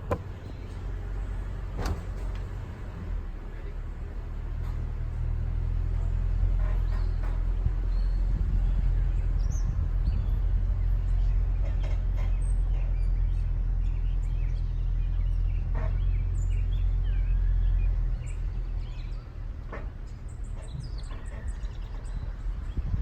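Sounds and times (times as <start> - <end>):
short knocks: 0.0 - 0.9
pickup truck engine rumbling: 0.0 - 23.0.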